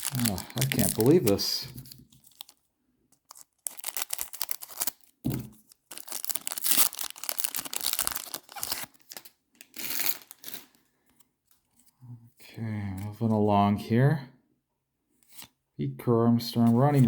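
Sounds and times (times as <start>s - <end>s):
wrapper crinkling and tearing: 0.0s - 2.6s, 3.2s - 10.8s.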